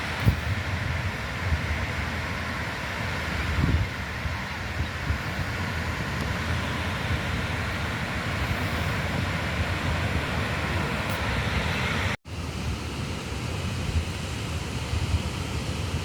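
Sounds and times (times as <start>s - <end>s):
wind buffeting microphone: 0.0s - 2.1s, 3.2s - 12.8s
sea surf: 0.0s - 16.0s.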